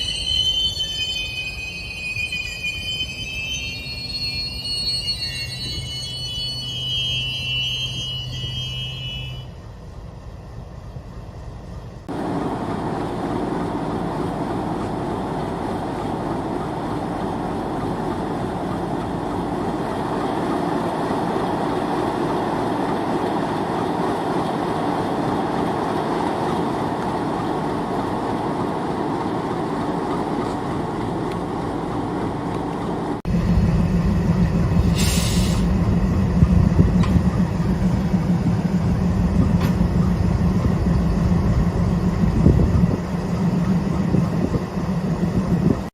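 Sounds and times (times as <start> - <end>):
high squeal: 0.0 - 9.6
train wheels and brakes rumbling: 0.0 - 45.9.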